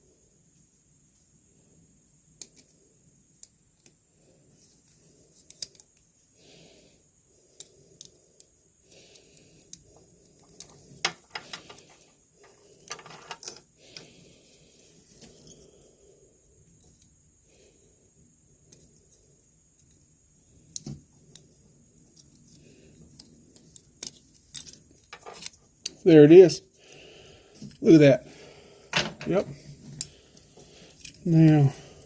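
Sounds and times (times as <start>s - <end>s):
small tool clicks and scrapes: 5.4s - 6.0s, 20.7s - 26.1s.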